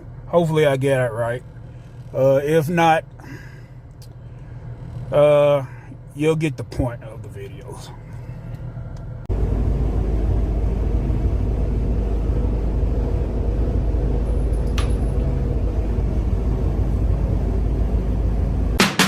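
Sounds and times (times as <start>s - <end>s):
car interior rumble: 0.0s - 18.8s.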